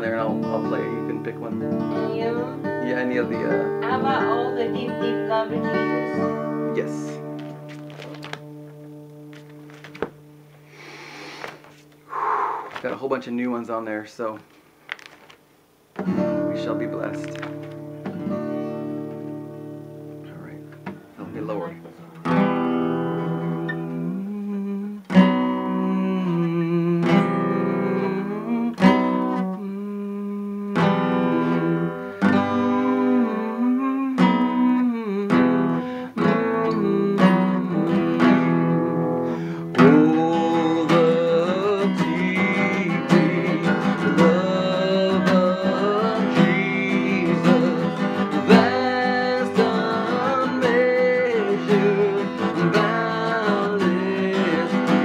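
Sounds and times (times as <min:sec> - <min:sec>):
acoustic guitar strumming: 0:00.0 - 0:55.0
person singing or humming: 0:23.8 - 0:38.1, 0:39.8 - 0:55.0.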